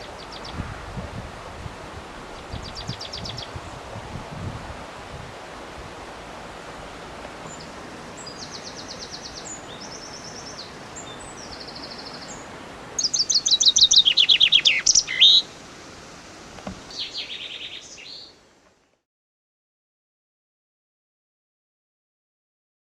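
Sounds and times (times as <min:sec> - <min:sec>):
songbirds singing: 0:00.0 - 0:00.8, 0:02.1 - 0:04.0, 0:05.6 - 0:18.4
background hiss: 0:00.0 - 0:19.0.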